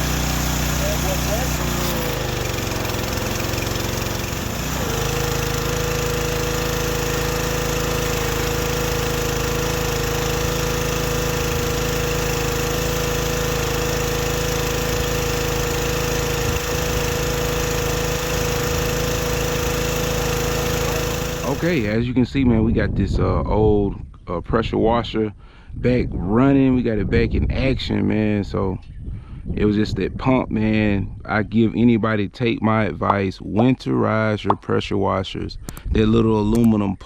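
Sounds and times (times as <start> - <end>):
pressure washer engine droning: 0.0 - 22.0.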